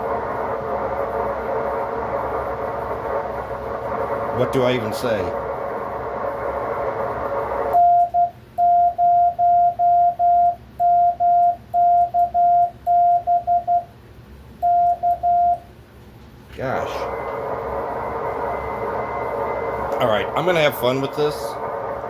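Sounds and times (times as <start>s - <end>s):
radio receiver hiss: 0.0s - 7.8s, 16.8s - 22.0s
morse code tone: 7.8s - 13.9s, 14.6s - 15.6s.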